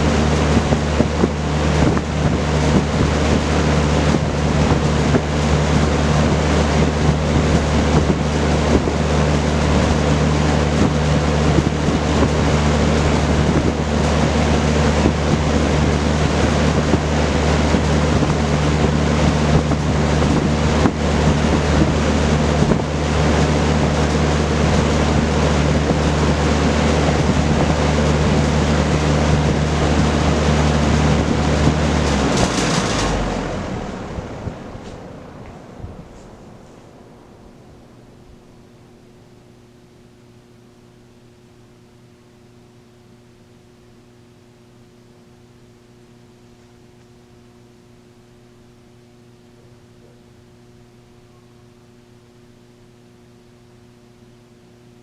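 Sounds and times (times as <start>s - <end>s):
box fan air rushing: 0.0s - 40.8s
fan motor hum: 0.0s - 55.0s.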